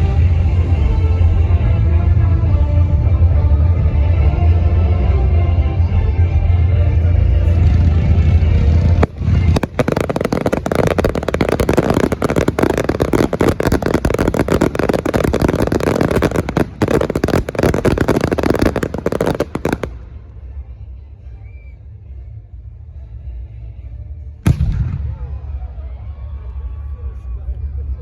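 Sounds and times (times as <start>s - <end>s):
show music: 0.0s - 20.2s
fireworks bangs and crackles: 7.5s - 20.4s, 24.5s - 25.7s.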